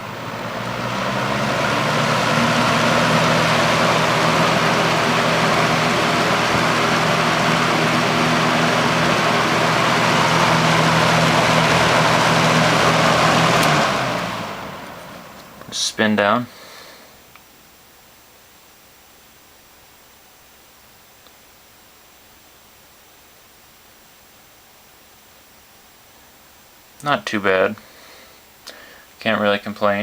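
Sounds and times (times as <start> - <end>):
box fan running: 0.0 - 17.2.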